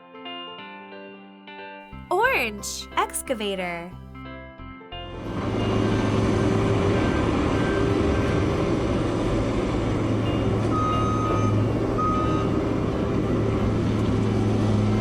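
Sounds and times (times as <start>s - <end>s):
diesel engine rumbling: 5.3s - 15.0s
reversing alarm beeps: 10.3s - 12.8s.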